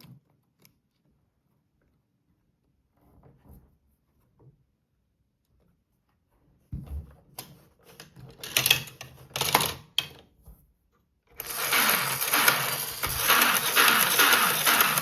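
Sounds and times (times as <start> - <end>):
plastic toy clicks and knocks: 7.9 - 10.3
toy motor whirring: 11.4 - 15.0.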